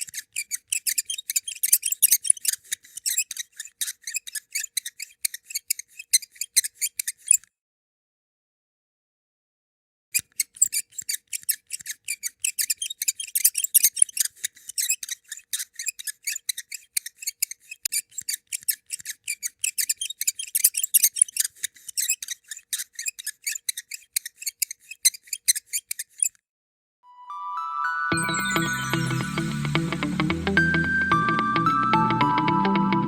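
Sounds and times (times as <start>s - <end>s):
rapid high-pitched squeaking: 0.0s - 7.5s, 10.2s - 26.4s.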